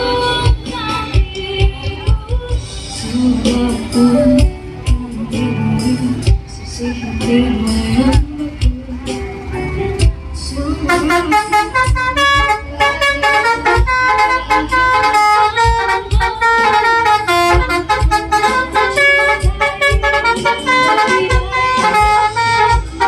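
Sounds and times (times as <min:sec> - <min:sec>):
musical air horns melody: 0:10.8 - 0:23.0.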